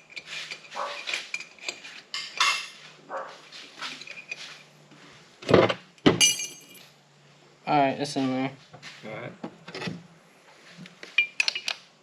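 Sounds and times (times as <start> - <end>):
metal parts clinking and scraping: 0.0 - 2.7.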